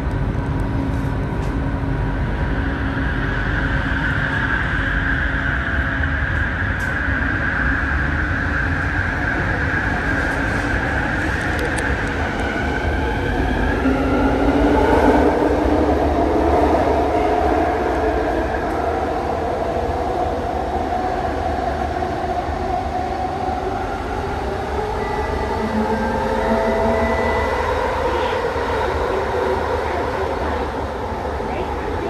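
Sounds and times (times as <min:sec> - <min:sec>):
train wheels rumbling on rail: 0:00.0 - 0:32.0
train motor whine: 0:23.5 - 0:32.0.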